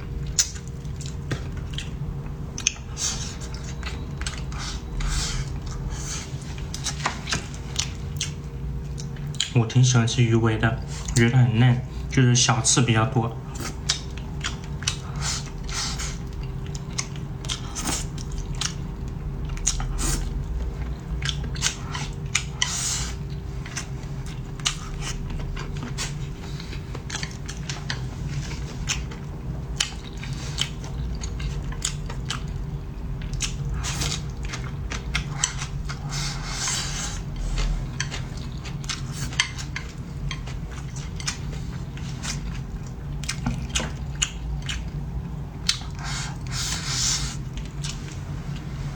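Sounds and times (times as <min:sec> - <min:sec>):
steady low hum: 0:00.0 - 0:48.9
chewing and biting: 0:00.1 - 0:09.6, 0:13.6 - 0:48.8
chopsticks clicking against bowl: 0:37.6 - 0:41.5.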